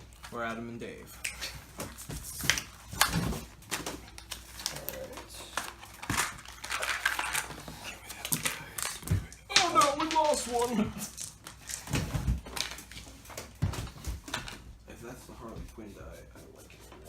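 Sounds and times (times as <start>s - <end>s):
packaging rustling and crinkling: 1.7s - 14.1s.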